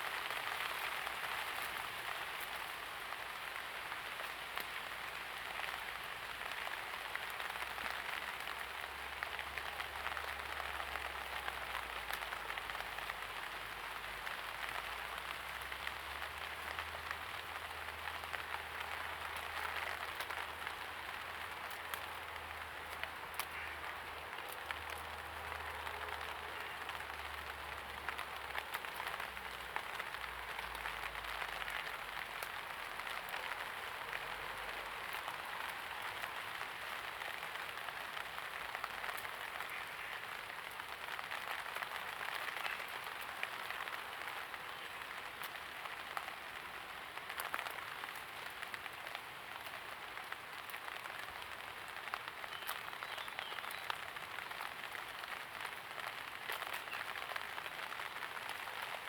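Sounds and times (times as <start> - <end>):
light rain hissing: 0.0 - 59.0
raindrop clicks: 15.6 - 38.0, 47.2 - 59.0.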